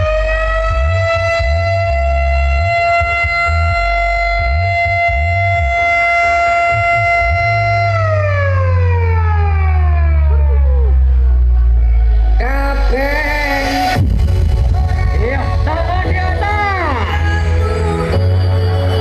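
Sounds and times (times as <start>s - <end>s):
siren tone: 0.0s - 12.7s
heavy thudding bass: 0.0s - 19.0s.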